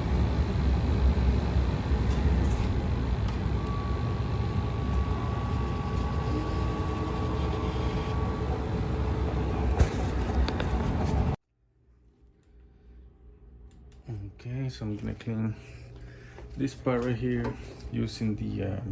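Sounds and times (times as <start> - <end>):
gas furnace running: 0.0 - 11.4, 12.7 - 18.9
faint thin whine: 2.0 - 10.1.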